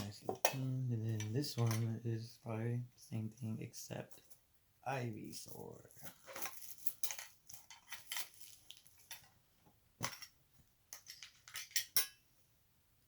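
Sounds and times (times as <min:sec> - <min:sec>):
metal tin clicks and clinks: 0:10.9 - 0:12.2.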